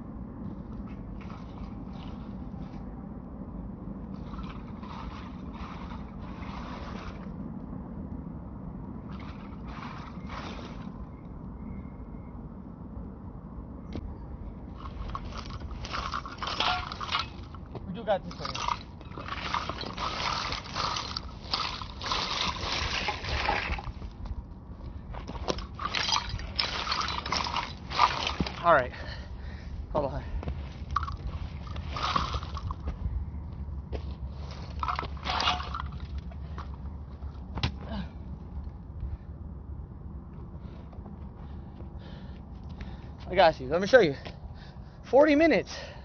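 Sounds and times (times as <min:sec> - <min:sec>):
steady low rumble: 0:00.0 - 0:46.0
hand scraping strokes: 0:04.1 - 0:07.4, 0:09.1 - 0:11.1, 0:14.7 - 0:24.2, 0:25.2 - 0:29.2, 0:30.6 - 0:33.0.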